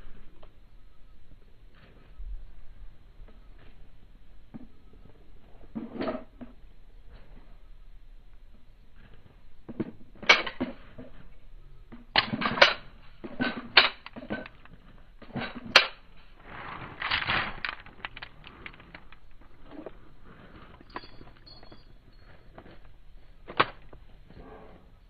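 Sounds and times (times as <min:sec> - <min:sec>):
pistol metallic clicks and clacks: 0:10.2 - 0:10.8, 0:11.9 - 0:16.1.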